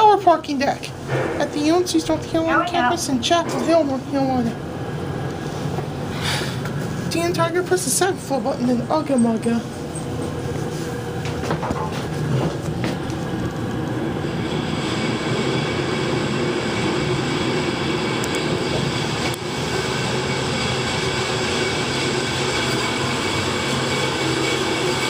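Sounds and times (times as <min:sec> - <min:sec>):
elevator ride noise: 0:00.0 - 0:25.0
thin elevator whine: 0:00.2 - 0:25.0.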